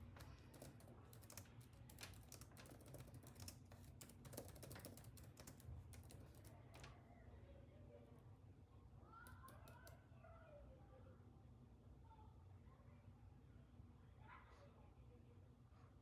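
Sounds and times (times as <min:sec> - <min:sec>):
faint keyboard typing: 0:00.0 - 0:07.0, 0:09.2 - 0:10.0.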